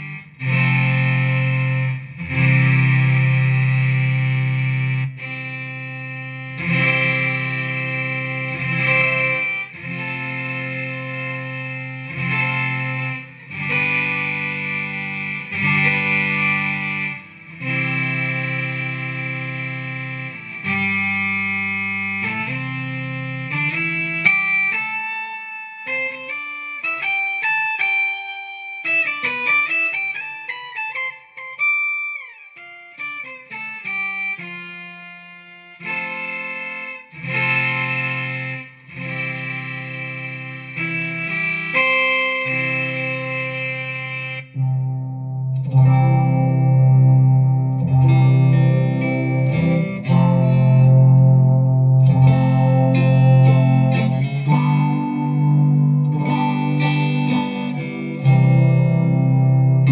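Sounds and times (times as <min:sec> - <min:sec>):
synth guitar chords and notes: 0:00.0 - 0:59.9.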